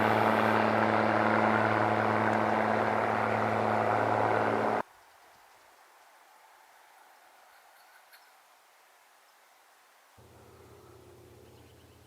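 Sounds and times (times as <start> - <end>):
van engine hum: 0.0 - 4.8, 10.2 - 12.0
road and wind noise: 0.0 - 9.3, 10.2 - 12.0.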